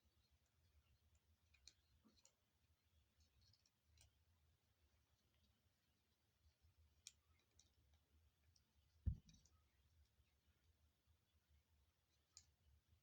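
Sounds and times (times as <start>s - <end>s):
dull thump: 9.1s - 9.3s.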